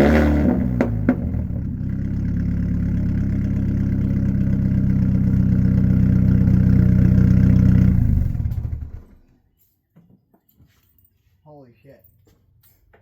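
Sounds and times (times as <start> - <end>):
car engine drone through exhaust: 0.0 - 9.2.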